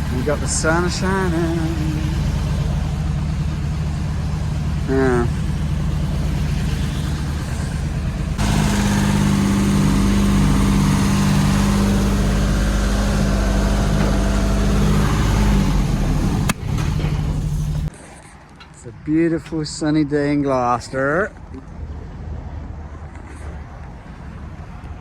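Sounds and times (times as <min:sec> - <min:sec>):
engine running: 0:00.0 - 0:17.9.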